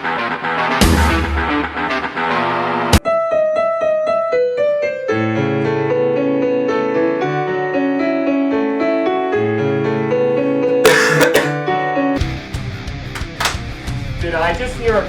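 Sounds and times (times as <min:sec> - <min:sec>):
sharp click: 0:13.2 - 0:13.8.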